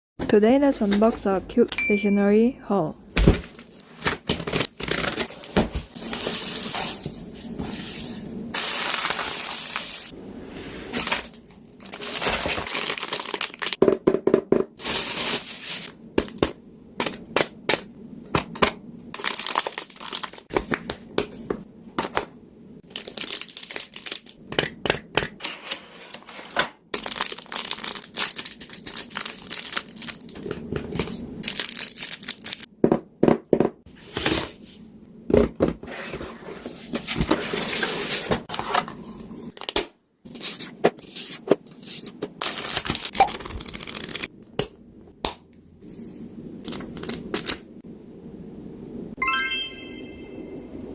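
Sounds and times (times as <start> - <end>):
wrapping crinkling and rustling: 3.3 - 10.2, 10.9 - 13.8, 14.8 - 16.0, 19.2 - 20.9, 22.8 - 24.4, 25.5 - 32.7, 40.3 - 44.3.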